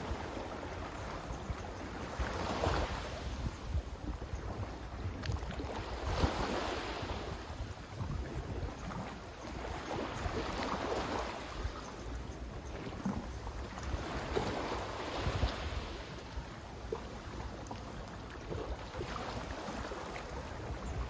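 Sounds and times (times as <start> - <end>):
sea waves washing onto shore: 0.0 - 11.8
wind buffeting microphone: 0.0 - 11.9, 12.6 - 16.6.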